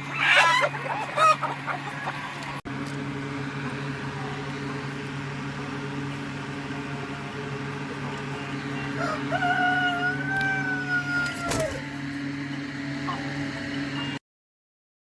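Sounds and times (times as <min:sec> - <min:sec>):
chickens clucking: 0:00.0 - 0:02.6, 0:07.9 - 0:14.1
steady low hum: 0:00.0 - 0:14.2.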